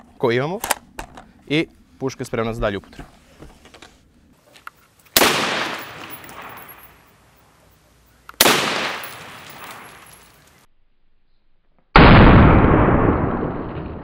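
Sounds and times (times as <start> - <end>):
rifle shots with echo: 5.2 - 7.0, 8.4 - 10.3.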